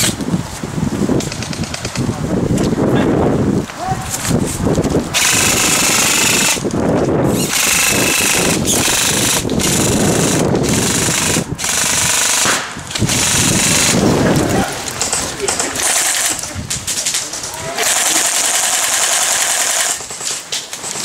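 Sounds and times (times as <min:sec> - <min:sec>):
airsoft guns firing full-auto: 0:05.2 - 0:06.6, 0:07.5 - 0:14.0, 0:15.0 - 0:16.4, 0:17.8 - 0:21.0.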